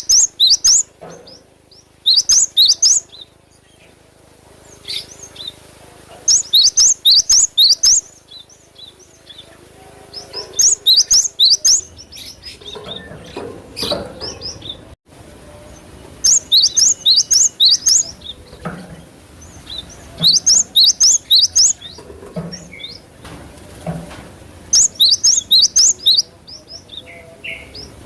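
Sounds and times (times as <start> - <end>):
bird singing high rising chirps: 0.0 - 1.0, 1.7 - 4.0, 6.3 - 9.6, 10.5 - 13.2, 15.7 - 18.5, 19.4 - 22.0, 24.7 - 27.9.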